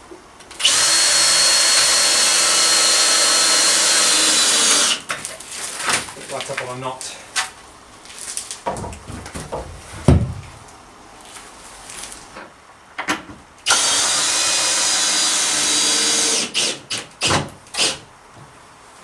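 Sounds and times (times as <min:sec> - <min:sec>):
power drill running: 0:00.5 - 0:05.1, 0:13.7 - 0:17.0, 0:17.8 - 0:18.0.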